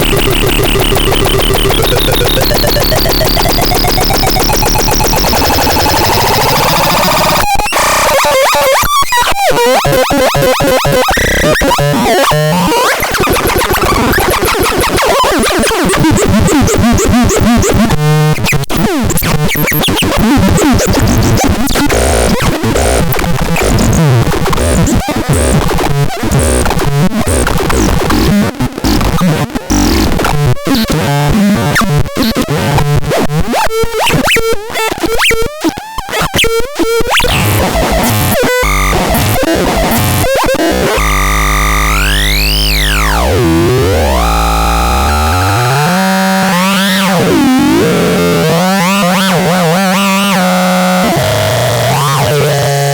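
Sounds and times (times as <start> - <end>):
low electronic drone: 0.0 - 7.4
sweeping electronic tones: 0.0 - 7.4
electronic crackling and clicks: 0.0 - 8.0, 37.2 - 43.3.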